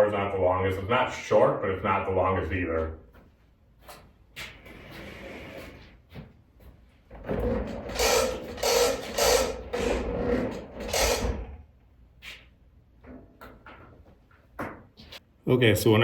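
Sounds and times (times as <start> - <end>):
power cord rubbing and clattering: 7.1 - 11.7.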